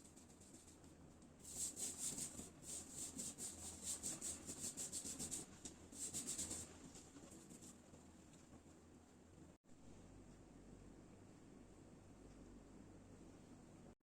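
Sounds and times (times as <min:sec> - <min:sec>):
rapid rhythmic rubbing strokes: 0:00.0 - 0:06.7.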